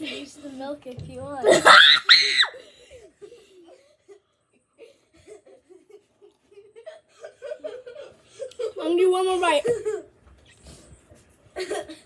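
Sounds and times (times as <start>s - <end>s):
person giggling quietly: 11.5s - 12.0s.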